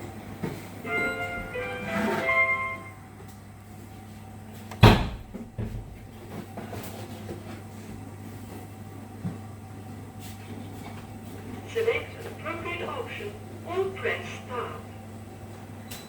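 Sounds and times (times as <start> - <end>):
electronic tone melody: 0.8 - 3.3
washing machine clunk: 4.7 - 6.1.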